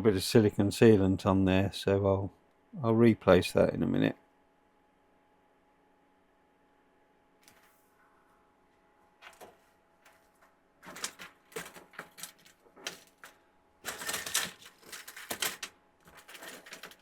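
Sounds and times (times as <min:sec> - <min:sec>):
hard plastic clicking and rattling: 0:10.8 - 0:17.0.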